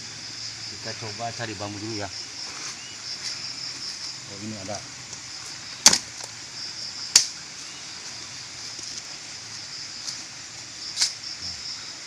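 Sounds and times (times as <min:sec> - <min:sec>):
bamboo cracking: 0:05.1 - 0:06.4, 0:07.1 - 0:07.4.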